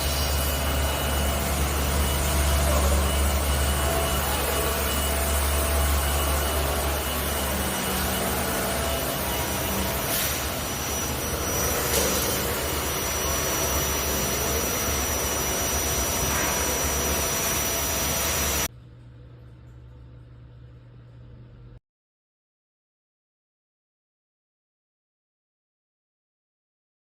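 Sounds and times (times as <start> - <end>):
vibration motor humming and whining: 0.0 - 18.7
faint hum: 0.0 - 21.8.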